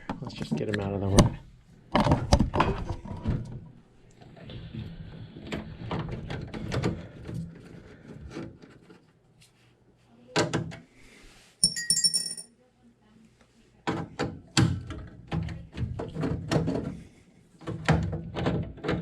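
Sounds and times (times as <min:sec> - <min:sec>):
ringing metallic clink: 0:11.6 - 0:12.5.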